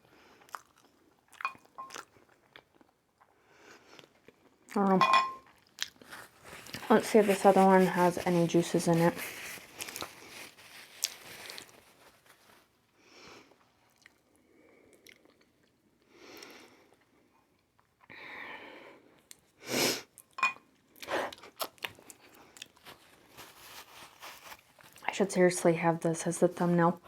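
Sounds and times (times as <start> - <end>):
person chewing: 0.4 - 7.0, 9.4 - 11.8, 13.9 - 14.3, 14.9 - 15.8, 20.2 - 23.3.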